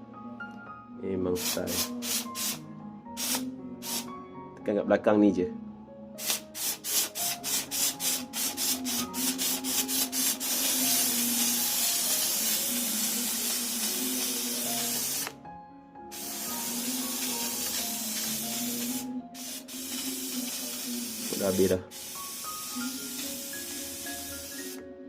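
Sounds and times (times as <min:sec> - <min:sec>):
steam cleaner hissing: 0:01.4 - 0:02.6, 0:03.2 - 0:04.1, 0:06.2 - 0:15.3, 0:16.1 - 0:24.8.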